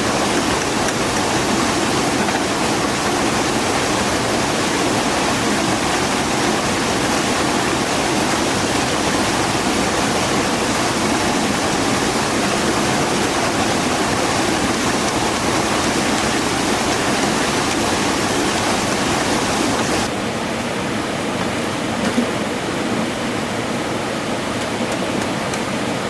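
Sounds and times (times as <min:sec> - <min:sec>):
rushing water: 0:00.0 - 0:20.1.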